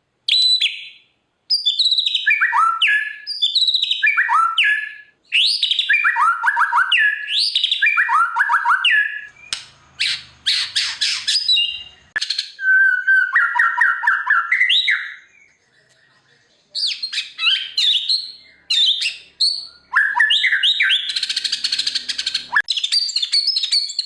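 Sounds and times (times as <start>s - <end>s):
bird singing whistled phrases: 0.3s - 16.1s, 16.7s - 24.0s
fast bird trill: 5.3s - 12.6s, 16.8s - 24.0s
harsh rasping bird notes: 9.1s - 12.2s, 16.9s - 22.7s.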